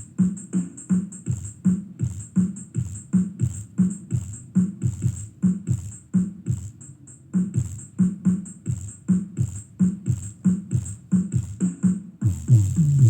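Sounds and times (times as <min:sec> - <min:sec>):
electronic music through speaker: 0:00.0 - 0:13.0
deep kick drum: 0:01.3 - 0:06.7, 0:08.7 - 0:11.6, 0:12.2 - 0:13.0.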